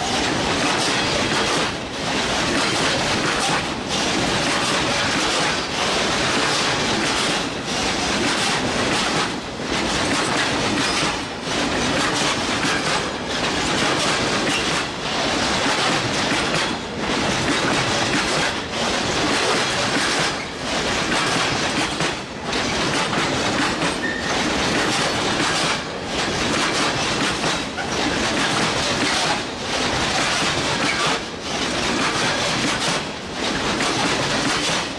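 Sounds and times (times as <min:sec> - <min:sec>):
train wheels rolling over rail joints: 0:00.0 - 0:34.9.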